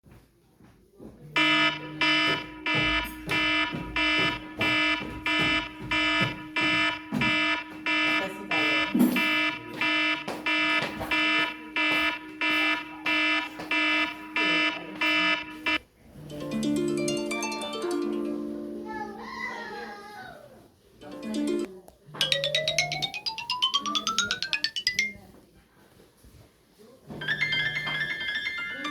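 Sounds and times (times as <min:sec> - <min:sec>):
electronic timer beeps: 0:01.4 - 0:15.8.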